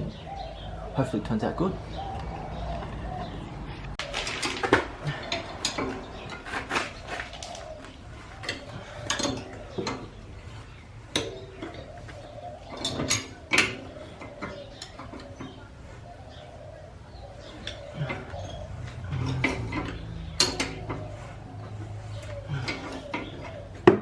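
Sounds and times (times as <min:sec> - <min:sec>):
hand tools clinking on metal: 0:08.4 - 0:10.1, 0:11.1 - 0:15.6, 0:17.6 - 0:21.2.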